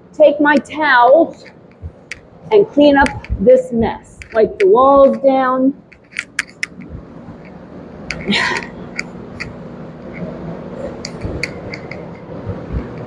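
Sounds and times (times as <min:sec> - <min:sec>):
faint steady hum: 0:00.0 - 0:13.0
light clicks and knocks: 0:04.1 - 0:05.2.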